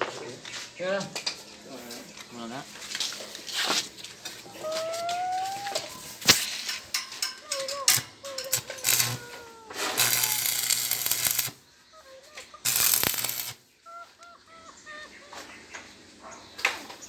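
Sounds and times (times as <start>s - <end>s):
arc welding crackling: 7.8s - 11.6s, 12.6s - 13.6s.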